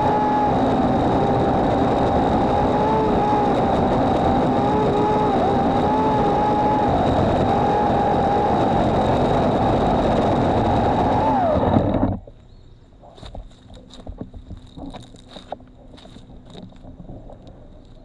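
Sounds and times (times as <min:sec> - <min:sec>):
cordless chainsaw whine: 0:00.0 - 0:12.4.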